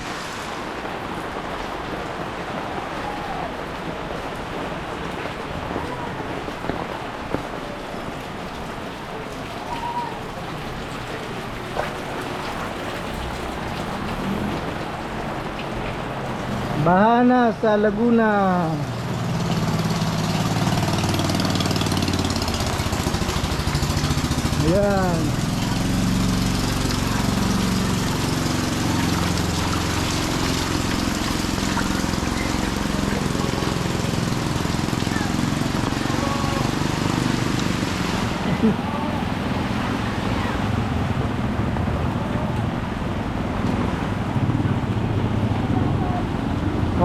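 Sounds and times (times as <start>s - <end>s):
steady rain falling: 0.0s - 47.0s
traffic noise: 0.0s - 47.0s
water noise: 0.0s - 47.0s.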